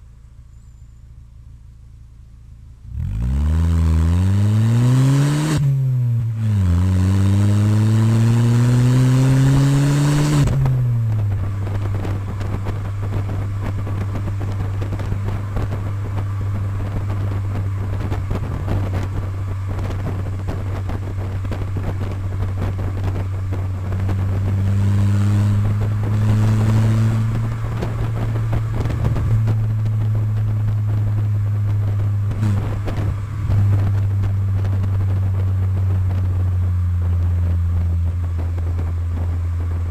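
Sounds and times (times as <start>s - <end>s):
car engine revving and idling: 0.0s - 39.9s.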